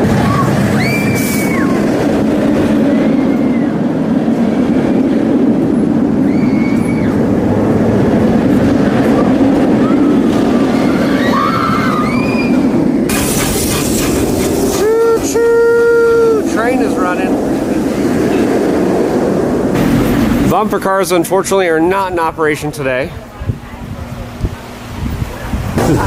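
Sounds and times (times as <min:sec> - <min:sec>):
train rumbling on rails: 0:00.0 - 0:26.0
high squeals: 0:06.2 - 0:07.3
hiss: 0:13.1 - 0:16.4.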